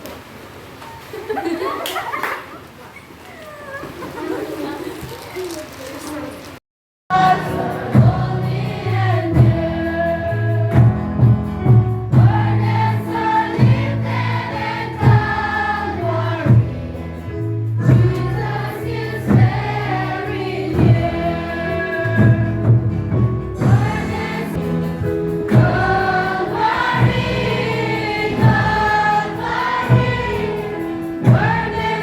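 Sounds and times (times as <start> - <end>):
choir singing: 7.1 - 10.8, 12.2 - 22.6, 23.6 - 32.0.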